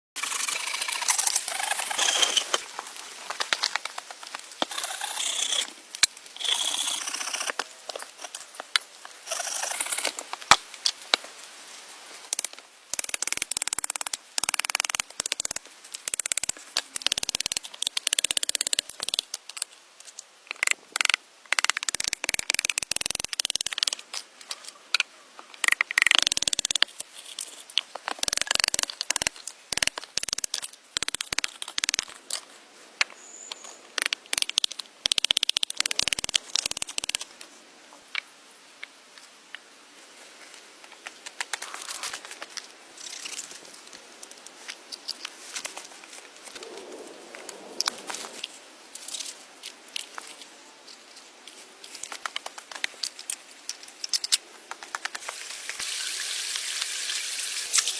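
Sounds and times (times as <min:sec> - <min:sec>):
sharp clicks: 0:25.6 - 0:27.0, 0:28.1 - 0:32.1, 0:33.5 - 0:37.3.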